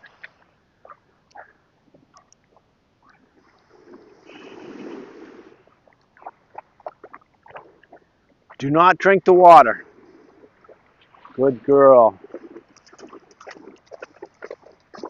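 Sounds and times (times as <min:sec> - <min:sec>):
faint ticks: 0:00.0 - 0:03.6
small wave washing ashore: 0:03.4 - 0:05.7.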